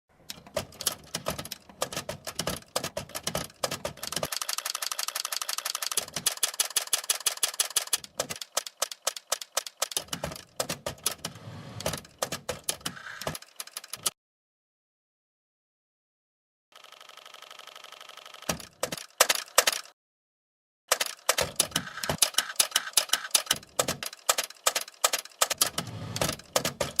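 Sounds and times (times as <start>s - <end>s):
typewriter keys clacking: 0.3s - 14.1s, 20.9s - 27.0s.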